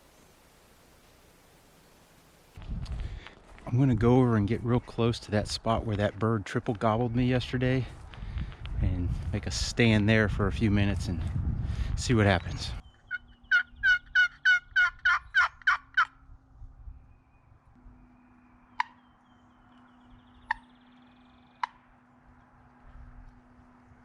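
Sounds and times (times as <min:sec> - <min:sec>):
turkey clucks: 0:13.0 - 0:16.2, 0:18.8 - 0:19.0, 0:20.4 - 0:20.7, 0:21.5 - 0:21.8
turkey yelps: 0:13.1 - 0:16.2.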